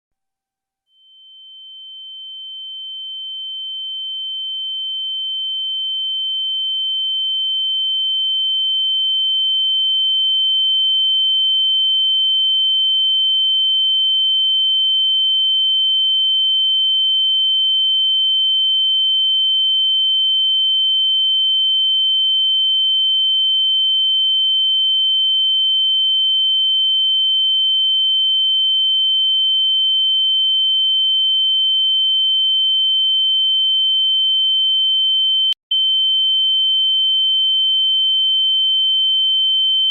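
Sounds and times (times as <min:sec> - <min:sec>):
high-pitched ringing tone: 0:00.9 - 0:06.7.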